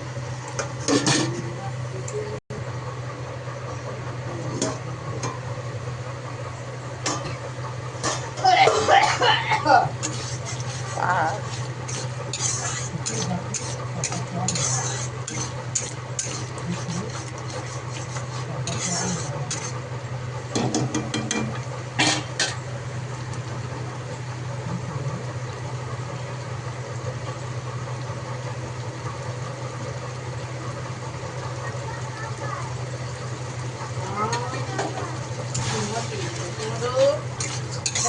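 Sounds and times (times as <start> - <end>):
steady low hum: 0.0 - 38.0
metal spatula scraping pan: 9.9 - 19.8, 37.4 - 38.0.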